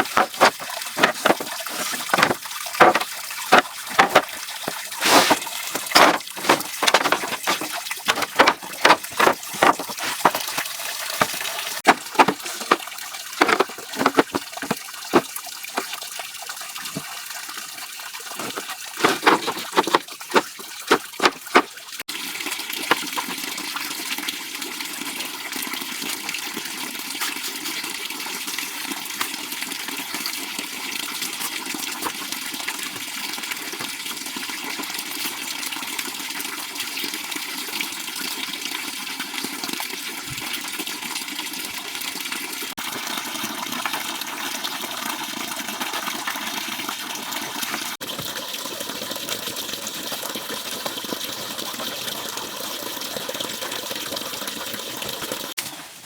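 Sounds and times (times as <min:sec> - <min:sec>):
water rushing: 0:00.0 - 0:15.9
water splashing: 0:00.0 - 0:16.0, 0:18.4 - 0:21.8.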